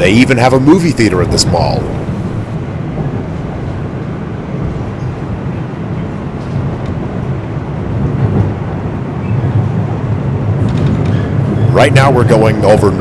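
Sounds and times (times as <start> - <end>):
subway train wheels rumbling on rail: 1.4 - 12.6.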